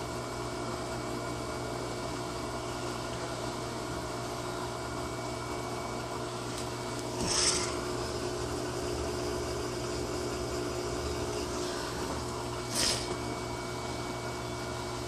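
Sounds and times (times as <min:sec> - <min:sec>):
washing machine motor hum: 0:00.0 - 0:15.0
short hissing rasp: 0:07.2 - 0:07.8, 0:12.6 - 0:13.2.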